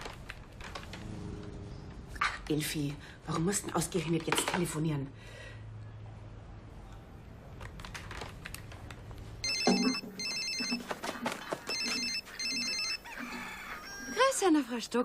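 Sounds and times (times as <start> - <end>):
telephone ringing: 9.4 - 14.3.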